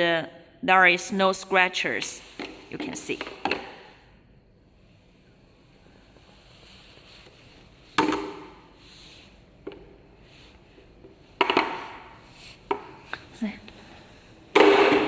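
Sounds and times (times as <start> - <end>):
plastic box clattering on floor: 11.4 - 12.1.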